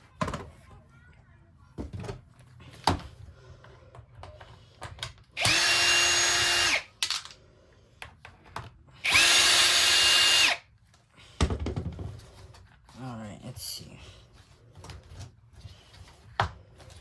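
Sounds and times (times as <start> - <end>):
power drill running: 5.4 - 7.0, 9.0 - 10.6.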